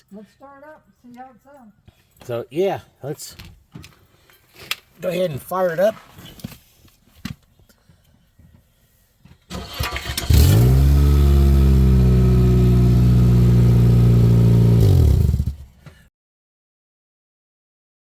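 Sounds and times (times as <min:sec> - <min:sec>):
car engine starting and idling: 0:09.5 - 0:15.8.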